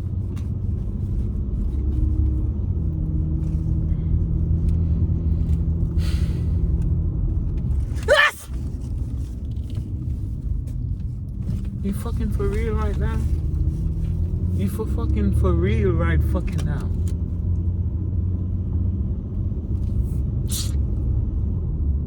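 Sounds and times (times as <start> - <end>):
car cabin rumble: 0.0 - 21.2
person sneezing: 8.1 - 8.5, 20.5 - 20.8.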